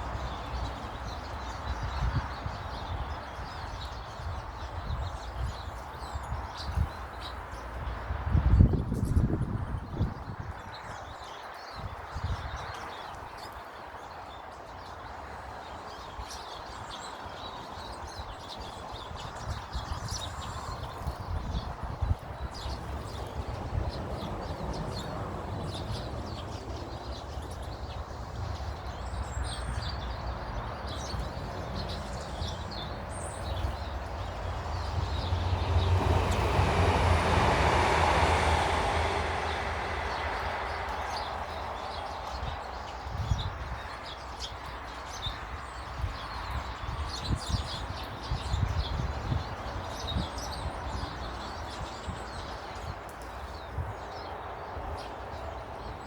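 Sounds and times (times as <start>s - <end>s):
small birds chirping: 0.0s - 56.0s
passing vehicle rumble: 21.8s - 43.7s.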